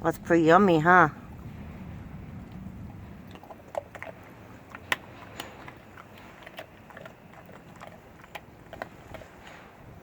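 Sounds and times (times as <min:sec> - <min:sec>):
dog chewing treat: 0:03.3 - 0:09.8.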